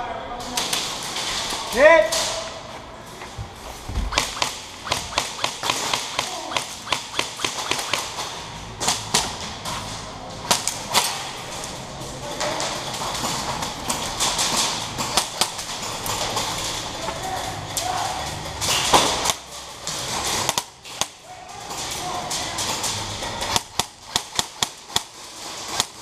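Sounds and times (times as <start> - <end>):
airsoft gun shots: 4.0 - 9.0.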